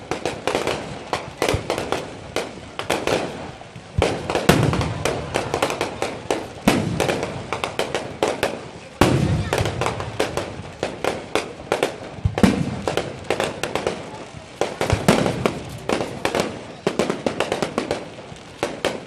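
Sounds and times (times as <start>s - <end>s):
fireworks crackling: 0.0s - 19.0s
fireworks shells booming: 0.0s - 19.0s.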